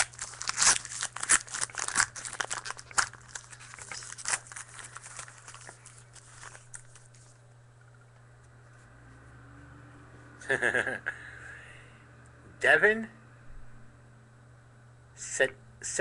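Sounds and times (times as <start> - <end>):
wrapper tearing and crinkling: 0.0 - 7.3.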